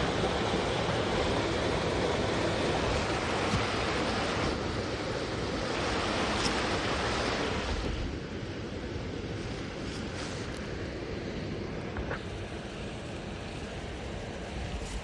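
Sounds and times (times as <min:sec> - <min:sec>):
wind buffeting microphone: 0:00.0 - 0:03.4
wind gusting through forest: 0:00.0 - 0:04.0.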